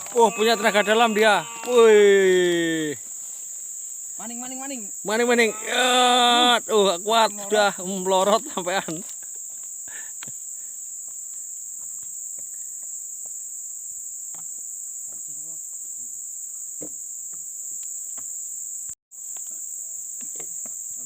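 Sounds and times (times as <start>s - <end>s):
faint voices calling: 0.0s - 3.0s, 5.2s - 6.7s
high-pitched insect chorus: 0.0s - 21.0s.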